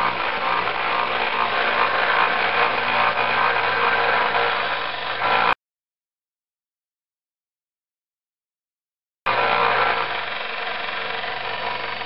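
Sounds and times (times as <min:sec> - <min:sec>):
belt sander running: 0:00.0 - 0:05.6, 0:09.3 - 0:12.0.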